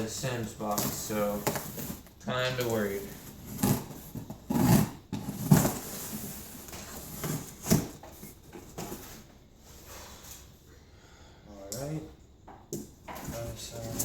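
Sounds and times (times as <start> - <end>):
packing tape and cardboard tearing: 0.0 - 9.2.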